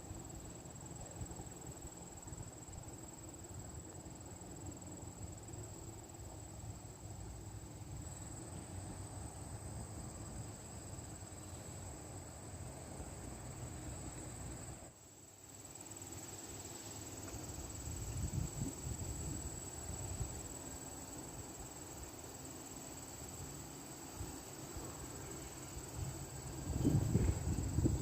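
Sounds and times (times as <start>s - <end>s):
wind buffeting microphone: 26.6s - 28.0s.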